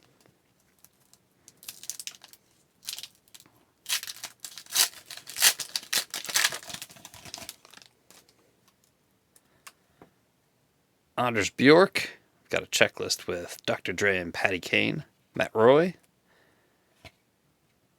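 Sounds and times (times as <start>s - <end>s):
foil wrapper tearing and crinkling: 0.8s - 8.2s.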